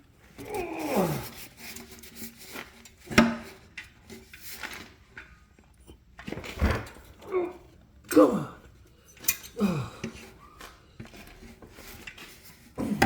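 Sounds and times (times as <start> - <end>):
screwdriver scraping and clanking metal: 9.1 - 9.6.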